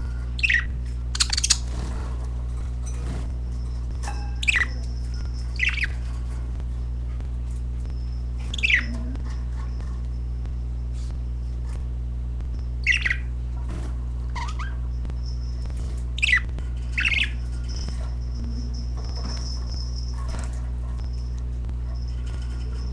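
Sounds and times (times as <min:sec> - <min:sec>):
steady low hum: 0:00.0 - 0:22.9
high bird chatter: 0:00.4 - 0:02.0, 0:04.3 - 0:06.4, 0:08.5 - 0:09.0, 0:12.8 - 0:13.3, 0:14.4 - 0:21.3
budgerigar squawking chirps: 0:05.6 - 0:06.0, 0:08.5 - 0:09.0, 0:12.8 - 0:13.3, 0:16.2 - 0:17.4.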